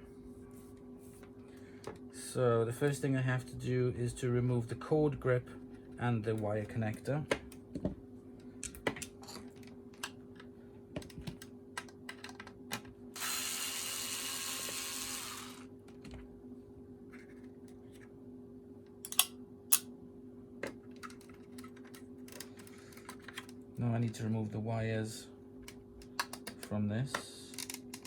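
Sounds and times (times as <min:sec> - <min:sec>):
plastic parts clicking and knocking: 0:20.6 - 0:23.5, 0:25.6 - 0:28.0.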